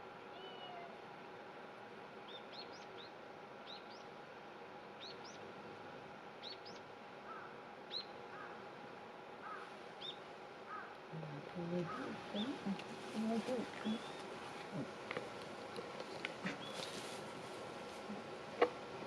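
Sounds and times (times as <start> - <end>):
steady background hiss: 0.0 - 19.0
small birds chirping: 11.6 - 15.0, 15.7 - 17.1.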